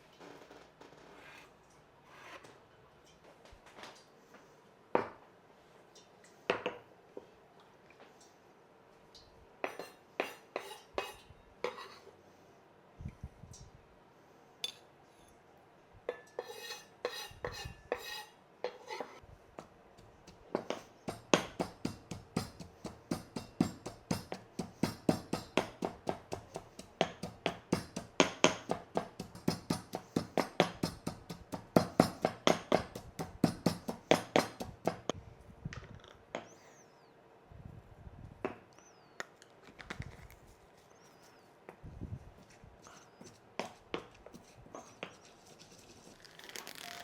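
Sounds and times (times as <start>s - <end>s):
knife chopping on cutting board: 20.0s - 35.1s.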